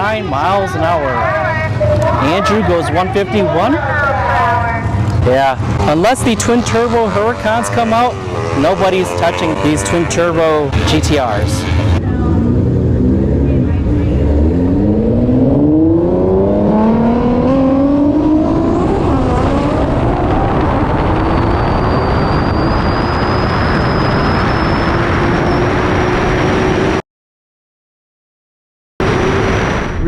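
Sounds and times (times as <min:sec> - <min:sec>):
car accelerating hard: 0:05.0 - 0:27.0
thin whine: 0:18.8 - 0:26.0.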